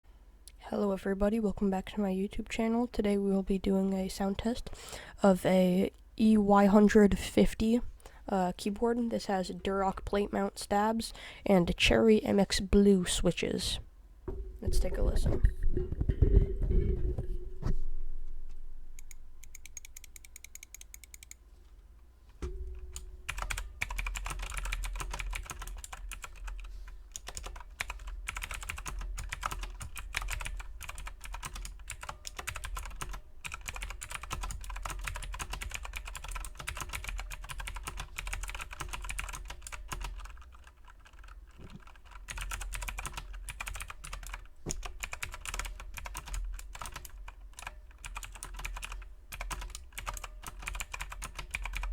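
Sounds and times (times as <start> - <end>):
thump: 14.3 - 14.8
mechanical keyboard typing: 19.4 - 21.4, 22.9 - 51.9.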